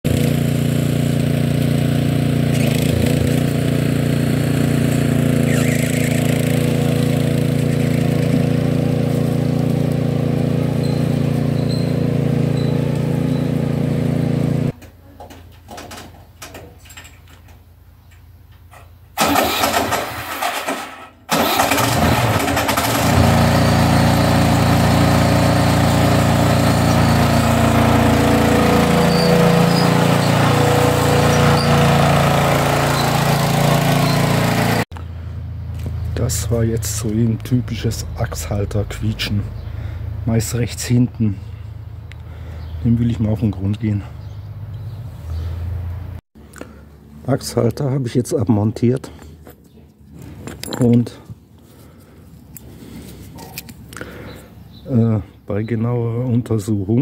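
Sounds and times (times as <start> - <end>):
small tractor engine running: 0.0 - 14.8, 19.2 - 37.2.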